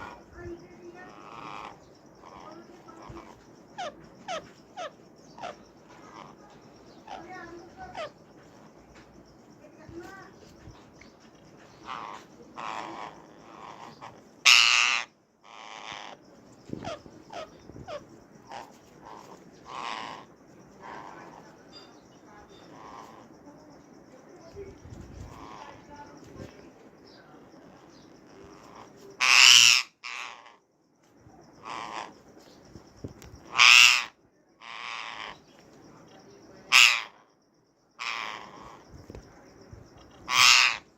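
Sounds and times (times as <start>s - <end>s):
parakeets squawking: 0.0s - 9.1s, 11.6s - 21.6s, 22.6s - 23.4s, 24.9s - 26.4s, 27.4s - 30.5s, 31.6s - 32.2s, 33.4s - 35.4s, 36.7s - 37.1s, 38.0s - 39.2s, 40.0s - 40.9s.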